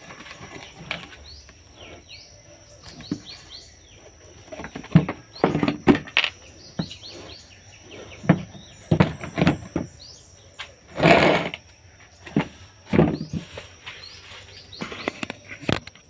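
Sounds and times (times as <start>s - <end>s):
scraping or rustling: 0.0s - 10.0s, 10.6s - 16.0s
birds chirping: 0.0s - 16.0s
knocks and clatters: 8.2s - 10.0s.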